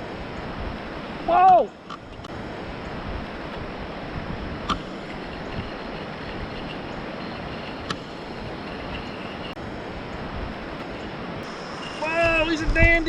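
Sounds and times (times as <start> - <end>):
river water rushing over rocks: 0.0 - 13.0
wind on microphone: 2.1 - 10.8.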